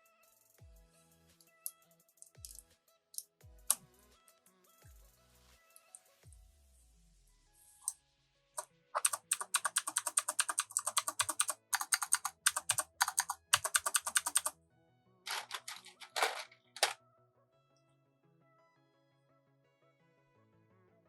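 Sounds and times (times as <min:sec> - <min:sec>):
quiet background music: 0:00.0 - 0:21.0
fast typing on keyboard: 0:09.0 - 0:14.5, 0:15.3 - 0:17.0.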